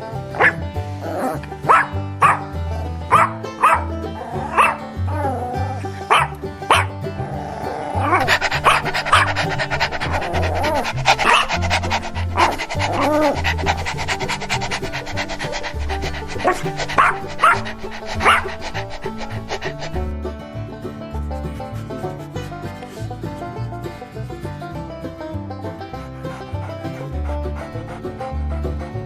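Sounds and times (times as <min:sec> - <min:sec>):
background music with bass line: 0:00.0 - 0:29.0
dog barking: 0:00.4 - 0:00.6, 0:01.6 - 0:02.5, 0:03.1 - 0:04.8, 0:06.0 - 0:07.0, 0:08.0 - 0:20.0.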